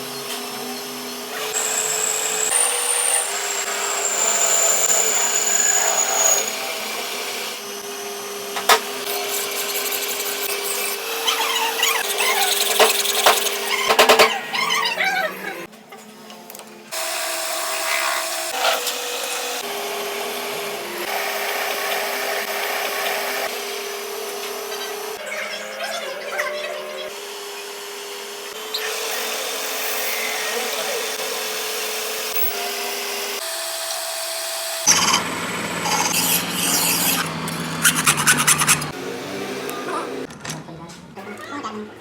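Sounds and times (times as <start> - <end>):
machine tool cutting metal: 0.4 - 7.6, 8.6 - 14.4, 34.8 - 39.0
quick scraping: 35.9 - 38.9.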